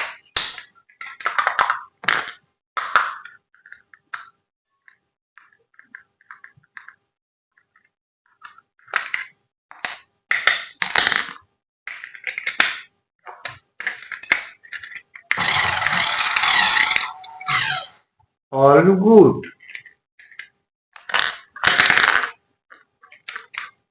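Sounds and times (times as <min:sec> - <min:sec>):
even rasp: 0:15.4 - 0:18.0.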